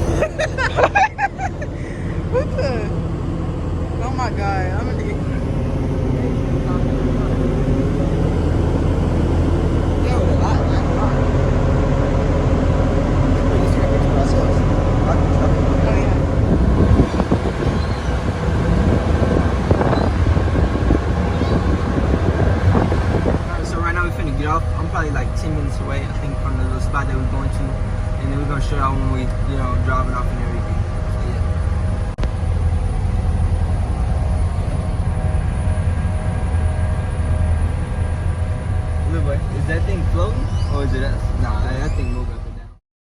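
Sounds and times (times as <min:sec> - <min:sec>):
wind buffeting microphone: 0:00.0 - 0:42.7
boat engine rumble: 0:00.0 - 0:42.8.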